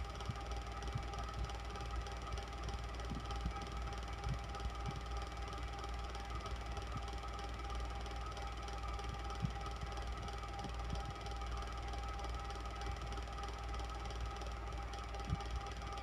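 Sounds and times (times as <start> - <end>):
electric fan whirring: 0.0 - 16.0.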